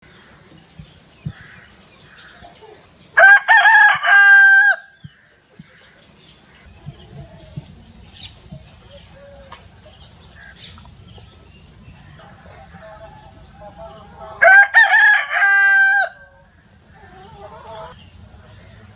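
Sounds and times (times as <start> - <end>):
rooster crowing: 3.2 - 5.0, 12.0 - 18.0.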